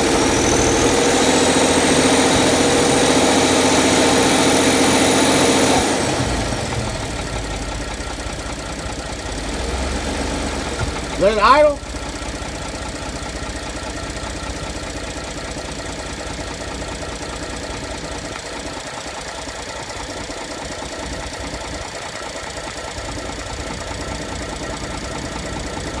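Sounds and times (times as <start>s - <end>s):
engine idling with a knock: 10.4s - 26.0s.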